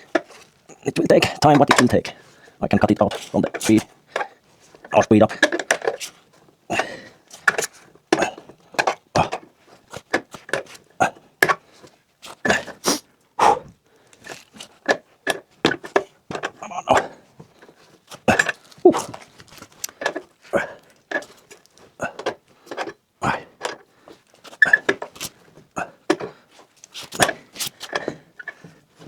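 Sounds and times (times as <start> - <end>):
tools knocking and clattering: 1.2 - 2.1, 2.8 - 6.1.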